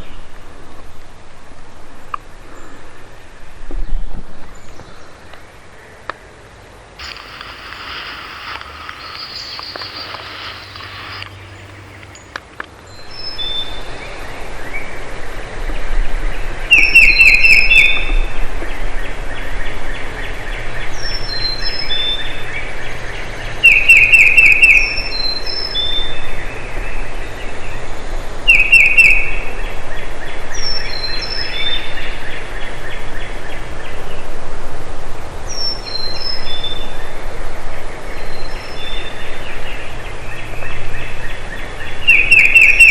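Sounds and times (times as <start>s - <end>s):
turkey gobbling: 7.0s - 12.5s
small birds chirping: 7.0s - 13.4s, 40.4s - 42.9s.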